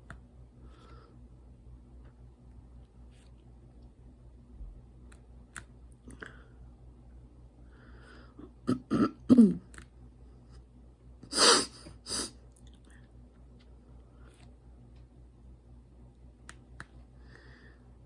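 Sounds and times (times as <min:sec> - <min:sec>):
person coughing: 0:08.4 - 0:09.7
person clearing throat: 0:08.5 - 0:09.7.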